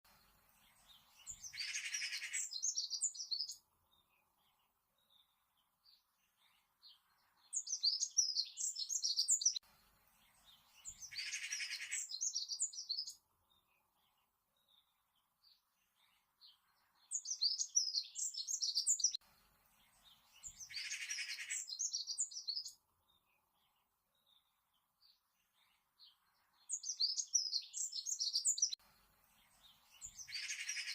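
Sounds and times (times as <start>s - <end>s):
songbird chirping: 0.1s - 30.9s
low buzzy bird trill: 0.3s - 3.6s.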